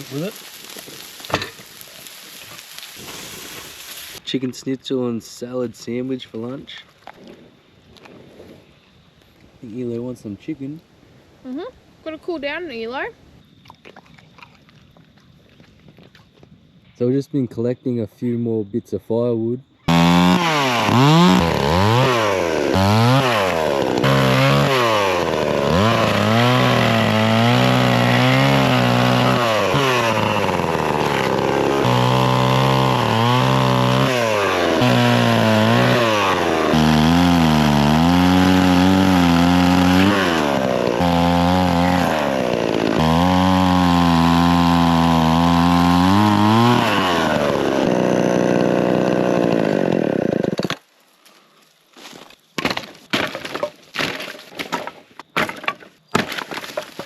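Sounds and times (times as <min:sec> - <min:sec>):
chainsaw cutting wood: 0:00.0 - 0:04.2, 0:19.9 - 0:50.9, 0:52.6 - 0:57.0.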